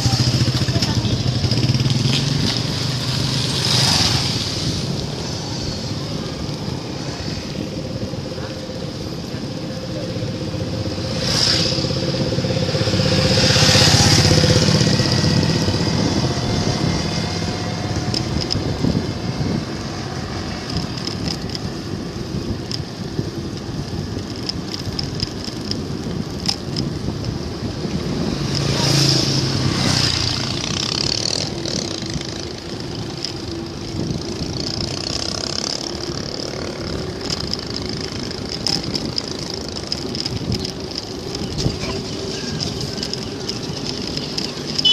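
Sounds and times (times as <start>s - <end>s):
motor vehicles passing: 0.0s - 44.9s
road noise from bicycle: 0.0s - 44.9s.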